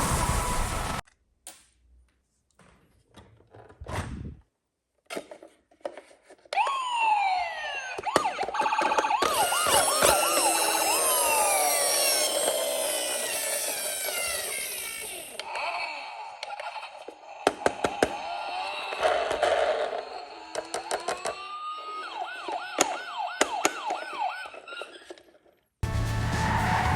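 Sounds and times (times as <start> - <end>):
wailing sirens: 0.0 - 1.0, 6.6 - 15.6, 20.0 - 24.8, 25.8 - 26.9.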